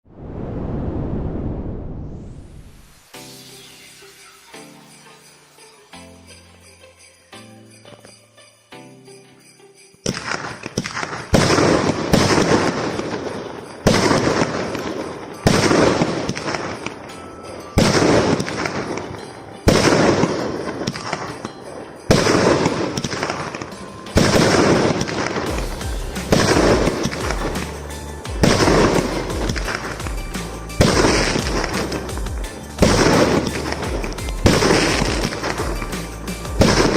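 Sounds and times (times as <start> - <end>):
fireworks battery firing: 10.0 - 36.9.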